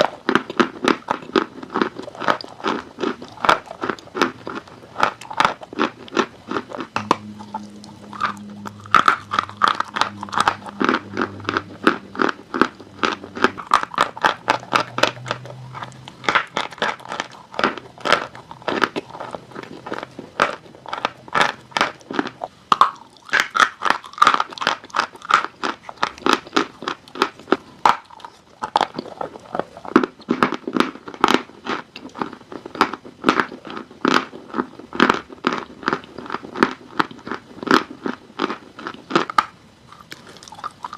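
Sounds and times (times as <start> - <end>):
chalk crunching while chewed: 0.0 - 40.9.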